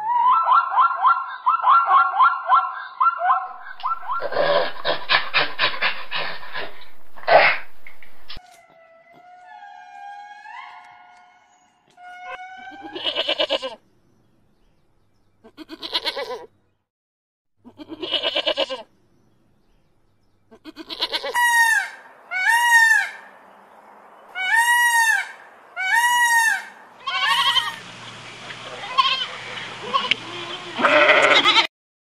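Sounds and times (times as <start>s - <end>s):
goats bleating: 3.6s - 8.4s, 12.3s - 13.8s, 15.4s - 16.5s, 17.7s - 18.8s, 20.5s - 21.4s, 27.0s - 27.8s, 28.7s - 31.7s.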